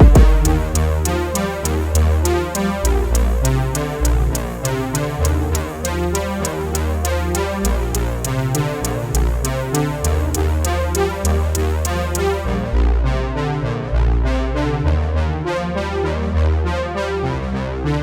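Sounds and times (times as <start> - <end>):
electronic dance music: 0.0 - 12.3.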